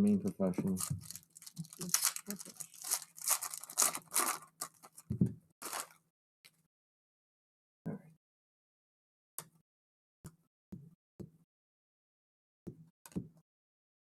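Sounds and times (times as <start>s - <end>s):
wrapper tearing and crinkling: 0.6s - 6.0s.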